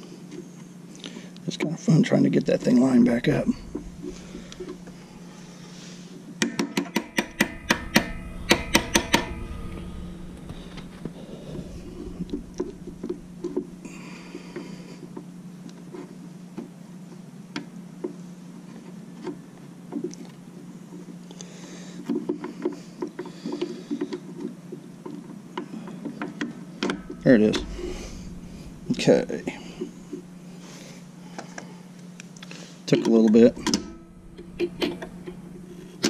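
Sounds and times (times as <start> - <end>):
steady low hum: 2.0 - 15.7, 26.7 - 36.0.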